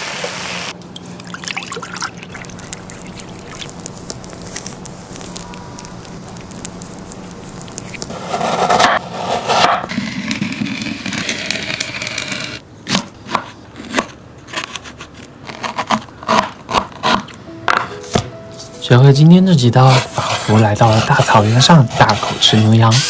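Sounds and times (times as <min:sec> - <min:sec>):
cooking scraping and crackling: 0:00.0 - 0:00.8, 0:02.1 - 0:12.6.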